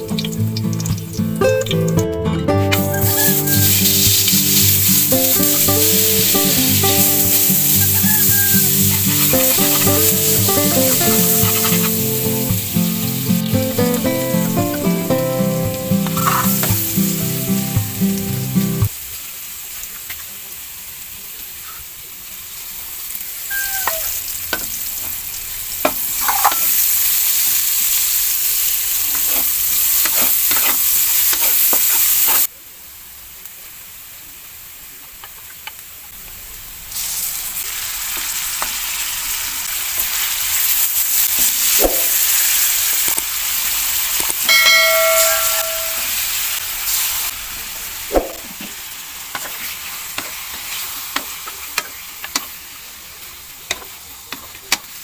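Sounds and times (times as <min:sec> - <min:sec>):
food sizzling in a pan: 0:00.0 - 0:55.0
short pitched squeak: 0:07.8 - 0:08.7, 0:23.5 - 0:24.1.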